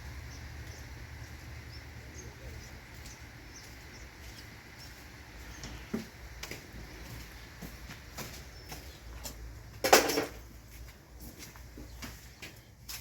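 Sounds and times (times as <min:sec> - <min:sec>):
low steady rumble: 0:00.0 - 0:07.6
small birds chirping: 0:00.0 - 0:09.8, 0:10.4 - 0:13.0.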